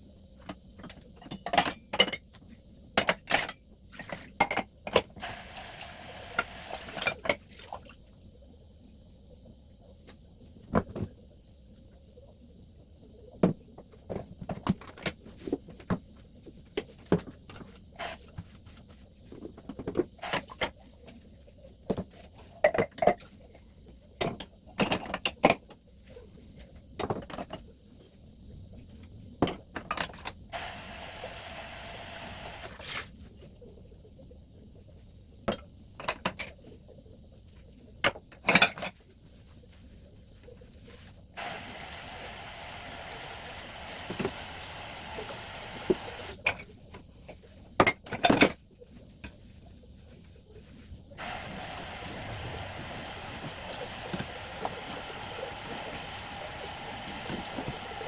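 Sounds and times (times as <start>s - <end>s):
dishes and jars clinking: 0.8s - 2.4s, 3.0s - 5.2s, 38.0s - 39.0s.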